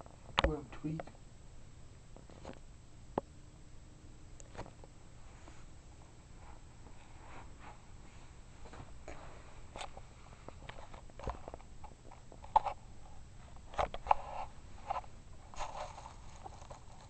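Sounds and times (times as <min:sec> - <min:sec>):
cat scuffling and rustling: 0:04.6 - 0:17.0.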